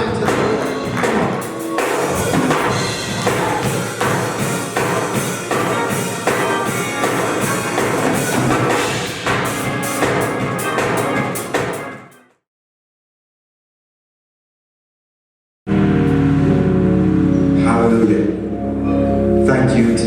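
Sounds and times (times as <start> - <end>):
music with steady drum beat: 0.0 - 12.2.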